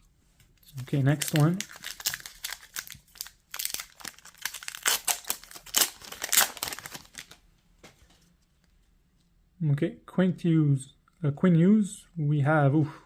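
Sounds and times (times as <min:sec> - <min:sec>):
foil pack tearing and crinkling: 0:01.0 - 0:07.4.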